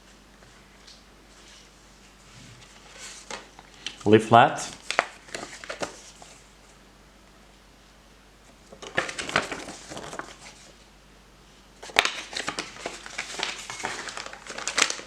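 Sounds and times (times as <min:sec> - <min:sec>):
packaging crinkling: 0:04.7 - 0:06.4, 0:08.6 - 0:10.7, 0:11.8 - 0:15.0.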